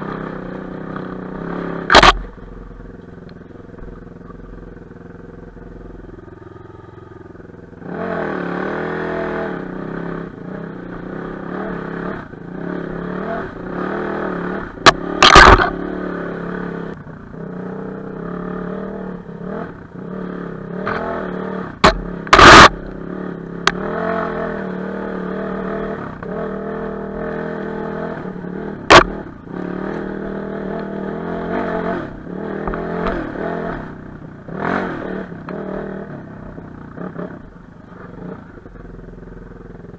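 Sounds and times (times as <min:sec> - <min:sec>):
motorcycle engine revving: 0:00.0 - 0:39.9
sharp loud knocks: 0:21.8 - 0:22.7.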